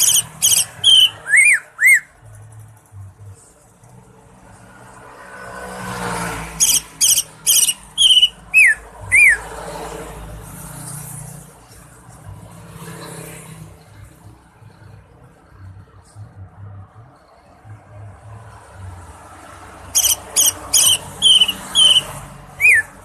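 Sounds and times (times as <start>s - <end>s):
bird calling sharply: 0.0s - 2.1s, 6.6s - 9.4s, 20.0s - 22.9s
passing vehicle rumble: 0.0s - 23.0s.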